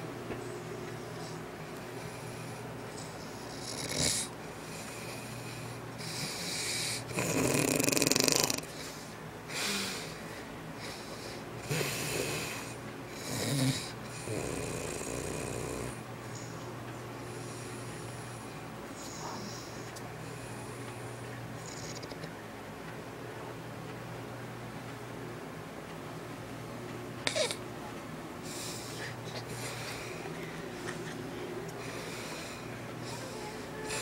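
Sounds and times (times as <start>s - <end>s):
low steady hum: 0.0s - 7.4s, 8.5s - 34.0s
person snoring: 3.0s - 4.3s, 5.3s - 8.7s, 11.6s - 16.0s.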